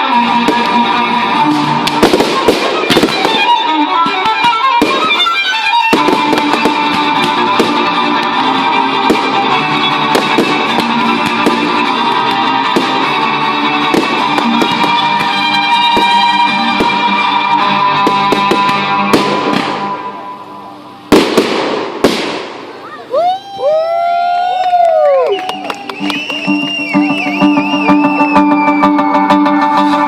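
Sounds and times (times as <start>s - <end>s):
violin music: 0.0s - 21.2s, 25.5s - 30.0s
firework bangs and crackles: 0.1s - 20.2s, 21.1s - 23.3s.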